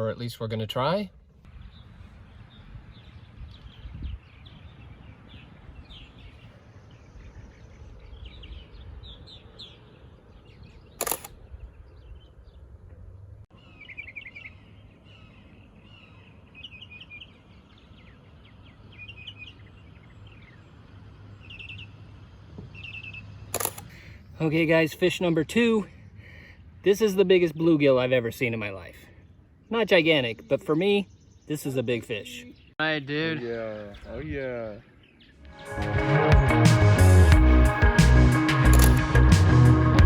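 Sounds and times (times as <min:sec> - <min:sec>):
small birds chirping: 0:00.0 - 0:35.8
wind rumble on microphone: 0:01.5 - 0:13.4, 0:34.0 - 0:34.8
sharp click: 0:11.0 - 0:11.4, 0:23.5 - 0:23.9.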